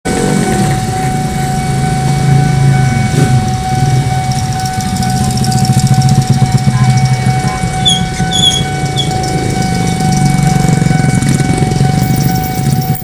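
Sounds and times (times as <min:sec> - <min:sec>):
engine rumble: 0:00.0 - 0:13.0
fast rhythmic clatter: 0:03.4 - 0:13.0
locomotive horn: 0:06.9 - 0:13.0.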